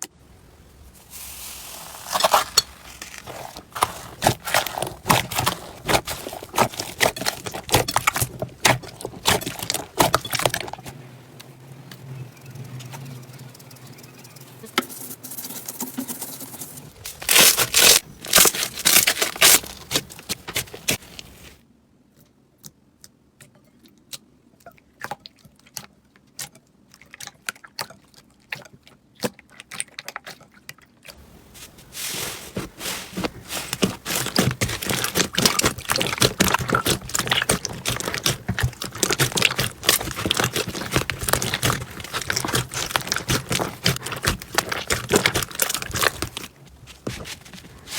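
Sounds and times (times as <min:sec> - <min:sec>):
slime crackling and popping: 0:01.0 - 0:10.9, 0:17.2 - 0:21.2, 0:32.8 - 0:46.5.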